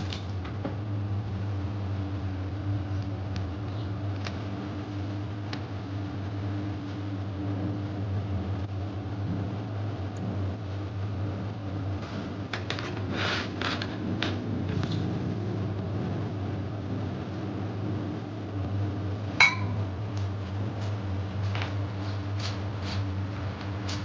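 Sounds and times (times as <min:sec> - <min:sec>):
low mechanical hum: 0:00.0 - 0:24.0
sharp ringing clink: 0:19.4 - 0:19.8.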